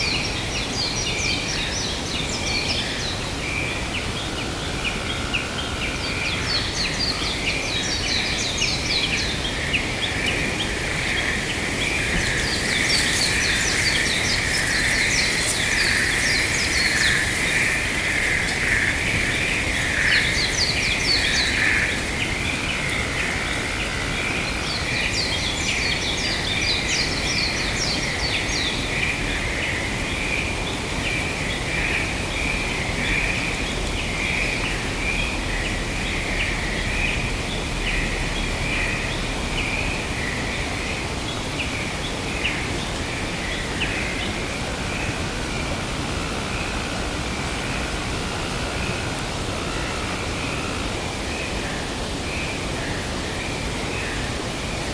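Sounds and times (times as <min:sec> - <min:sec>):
even hiss: 0:04.1 - 0:54.9
birds chirping rapidly: 0:07.9 - 0:23.5.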